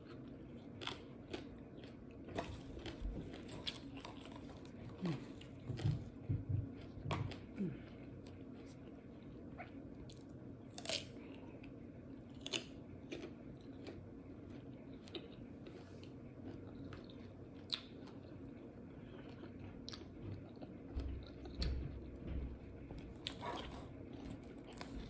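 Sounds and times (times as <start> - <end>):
person chewing crunchy food: 0.0 - 22.2, 22.8 - 25.0
faint steady hum: 0.0 - 25.0.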